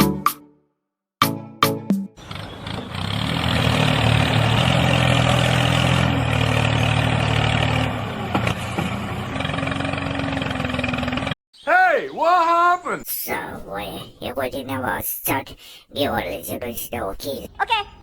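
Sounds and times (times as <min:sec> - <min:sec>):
tractor engine running: 0:02.2 - 0:11.4.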